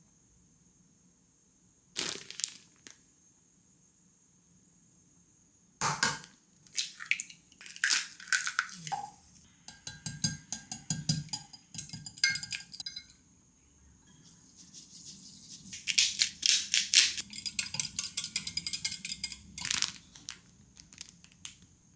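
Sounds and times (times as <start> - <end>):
dishes and utensils clattering: 9.7 - 13.2, 17.0 - 20.0.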